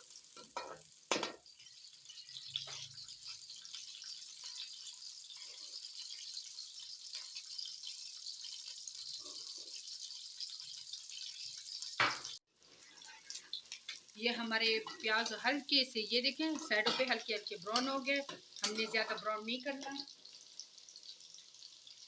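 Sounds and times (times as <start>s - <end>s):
onion sizzling in oil: 0.0s - 22.0s
spoon clicking against pan: 16.8s - 19.0s.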